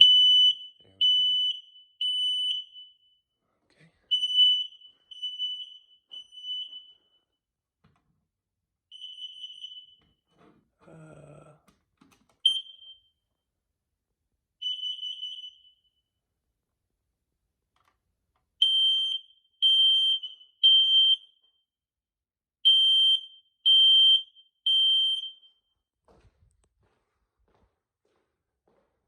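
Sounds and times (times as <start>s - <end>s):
smoke alarm beeping: 0.0s - 3.4s, 4.1s - 7.5s, 8.9s - 10.4s, 12.4s - 13.4s, 14.6s - 16.2s, 18.6s - 21.7s, 22.6s - 25.9s
smoke alarm chirp: 0.0s - 3.4s, 4.1s - 7.4s, 8.9s - 10.3s, 12.4s - 13.3s, 14.6s - 16.1s, 18.6s - 21.7s, 22.6s - 25.9s.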